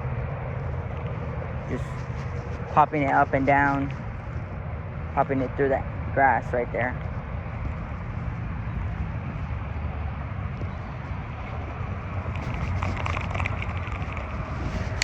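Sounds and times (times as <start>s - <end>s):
wind rumble on microphone: 0.0s - 15.0s
light rapid ticks: 12.3s - 15.0s.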